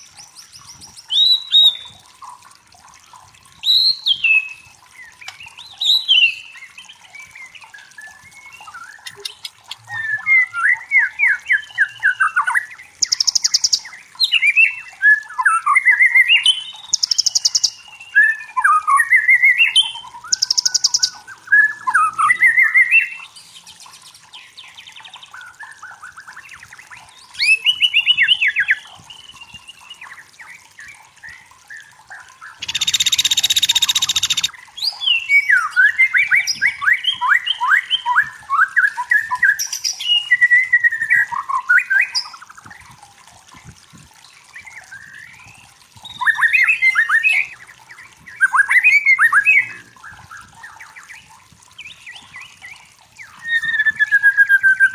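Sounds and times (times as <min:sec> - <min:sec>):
songbird singing whistled phrases: 0:08.1 - 0:23.4, 0:27.0 - 0:30.1, 0:32.6 - 0:42.4, 0:51.9 - 0:54.9.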